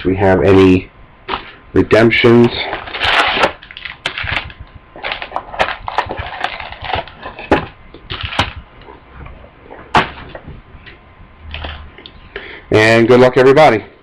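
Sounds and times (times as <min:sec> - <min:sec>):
cardboard and wrappers crinkling: 0:02.4 - 0:09.0.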